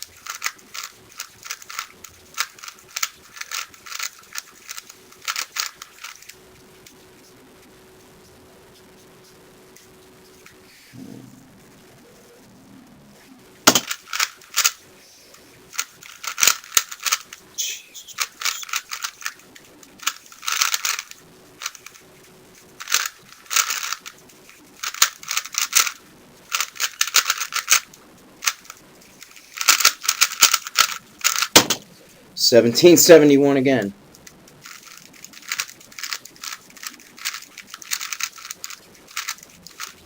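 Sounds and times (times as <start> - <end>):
rapid plastic clicking of cube: 0.0 - 7.0, 13.7 - 17.5, 18.1 - 31.9, 34.1 - 40.0.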